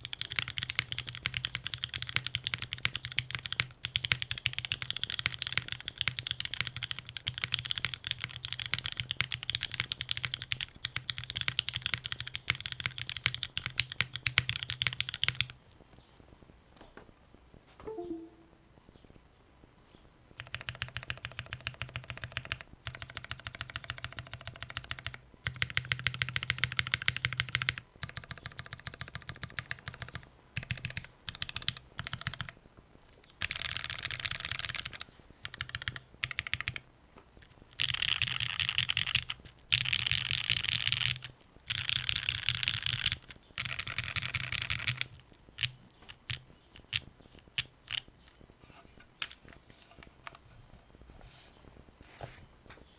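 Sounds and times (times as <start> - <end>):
keyboard typing clatter: 0.0 - 15.6, 20.4 - 32.5, 33.4 - 36.8, 37.8 - 48.2.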